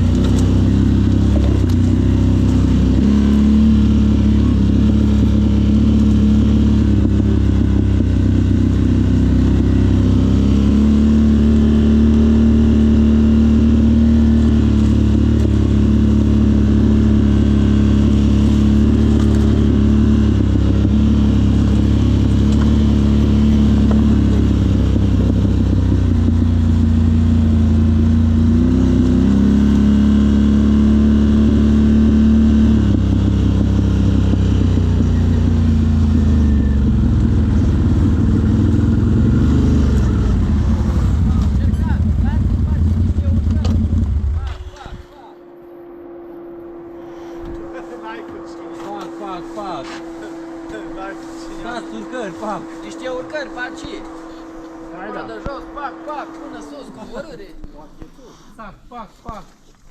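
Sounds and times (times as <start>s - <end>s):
off-road vehicle engine running: 0.0s - 59.9s.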